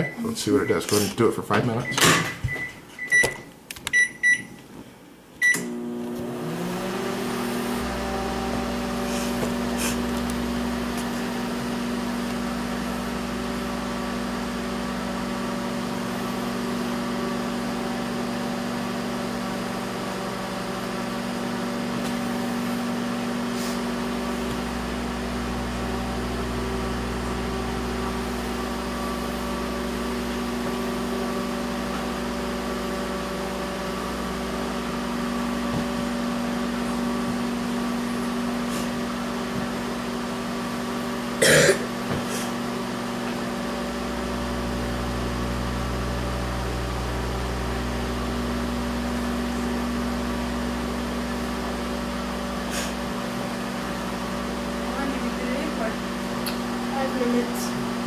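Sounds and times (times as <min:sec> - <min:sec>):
microwave keypad beeps: 0:00.0 - 0:00.8, 0:01.8 - 0:04.6, 0:05.4 - 0:05.7
microwave oven humming: 0:00.0 - 0:58.0.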